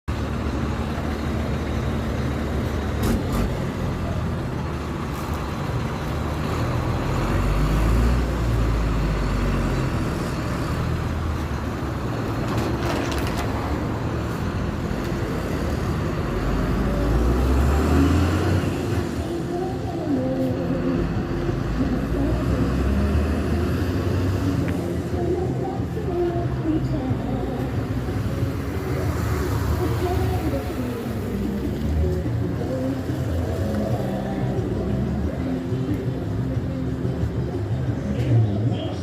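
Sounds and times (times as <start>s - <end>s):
diesel bus engine rumbling: 0.0s - 39.0s.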